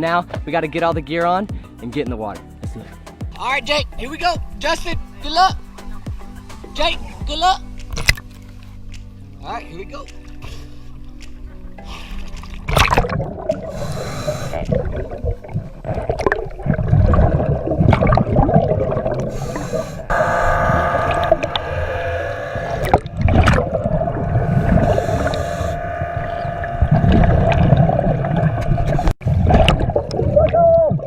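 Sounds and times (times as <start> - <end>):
scuba regulator breathing: 6.2 - 7.3, 10.4 - 11.2, 11.8 - 12.5, 13.6 - 15.1, 19.1 - 22.9, 24.0 - 27.6
bubbles rumbling: 12.3 - 31.0
steady humming tone: 19.3 - 29.1.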